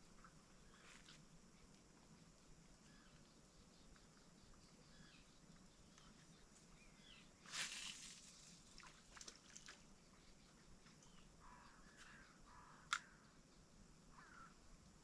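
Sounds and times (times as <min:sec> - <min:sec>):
faint bird chirps: 0:00.3 - 0:01.2, 0:02.2 - 0:14.7
faint clicks: 0:12.8 - 0:13.2.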